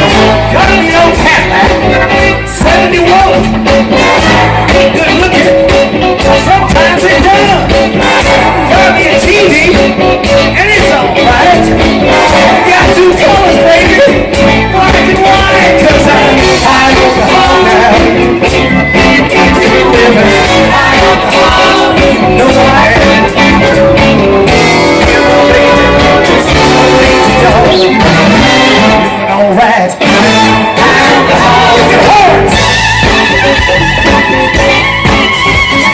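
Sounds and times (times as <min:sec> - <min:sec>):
person singing: 0:00.0 - 0:34.7
blues band playing live: 0:00.0 - 0:35.9
guitar: 0:00.0 - 0:35.9.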